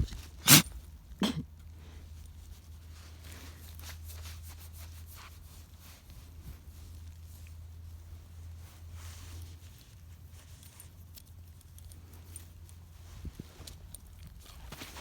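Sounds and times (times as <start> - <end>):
dog sneezing: 0.4 - 1.5.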